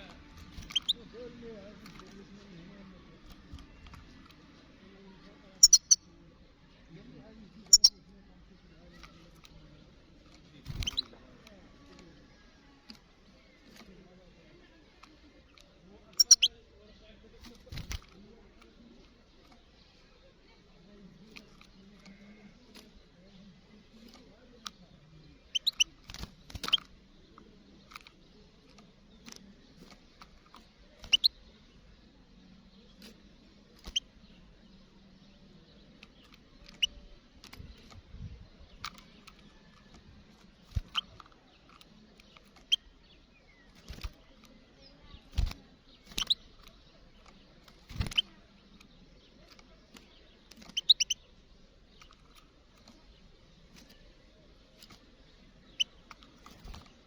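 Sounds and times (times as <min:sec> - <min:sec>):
goldfinch high chirps: 0:00.5 - 0:01.1, 0:05.6 - 0:06.1, 0:07.7 - 0:08.0, 0:16.1 - 0:16.6, 0:25.5 - 0:26.0, 0:31.0 - 0:31.4, 0:44.8 - 0:46.6, 0:50.6 - 0:51.3.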